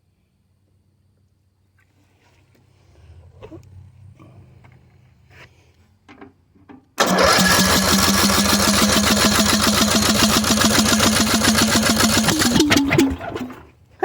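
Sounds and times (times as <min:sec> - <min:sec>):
lawnmower engine chugging: 0:07.0 - 0:13.9.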